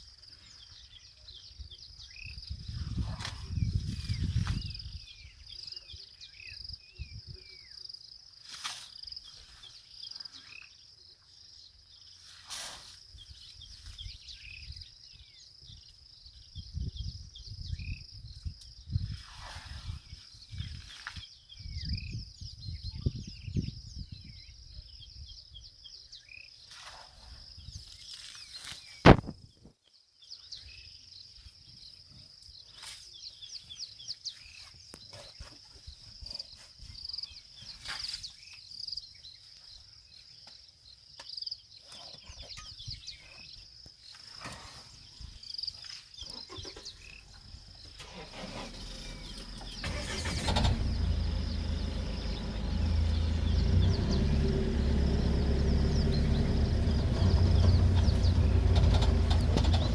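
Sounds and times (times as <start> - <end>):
bird calls: 19.0 - 59.9.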